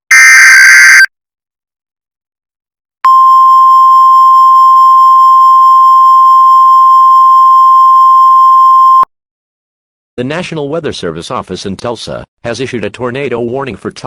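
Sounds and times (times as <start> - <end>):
steady high alert tone: 0.1 - 1.1.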